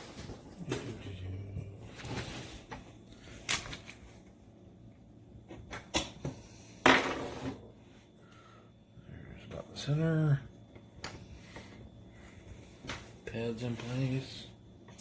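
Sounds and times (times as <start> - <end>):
soft handling noise: 0.0 - 4.4.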